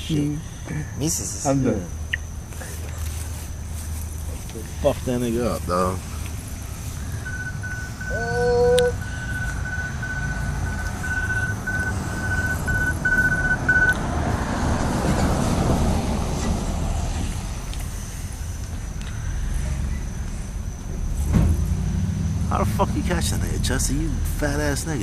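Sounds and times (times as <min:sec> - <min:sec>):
vehicle passing: 0:00.0 - 0:25.0
high-pitched beeping: 0:07.0 - 0:14.0.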